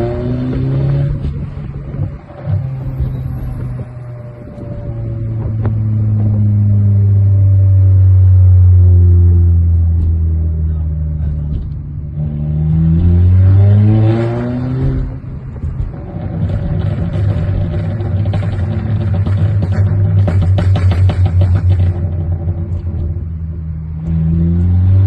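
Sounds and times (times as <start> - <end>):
car engine revving: 0.0 - 25.0
exhaust pops and crackles: 0.5 - 6.5, 9.5 - 12.2, 14.6 - 24.7.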